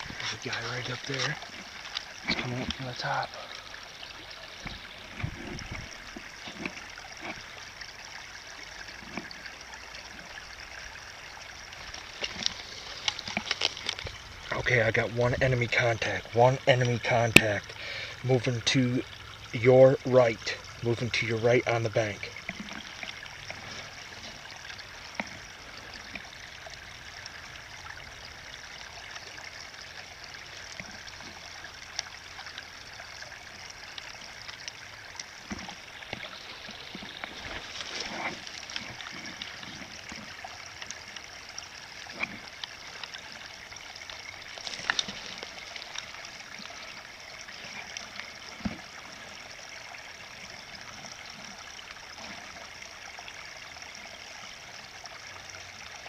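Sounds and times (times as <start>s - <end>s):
stream water running: 0.0s - 56.0s.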